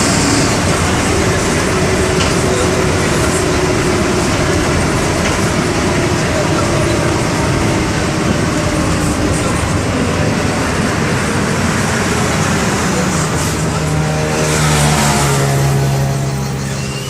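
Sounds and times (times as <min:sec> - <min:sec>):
bus engine running: 0:00.0 - 0:17.0.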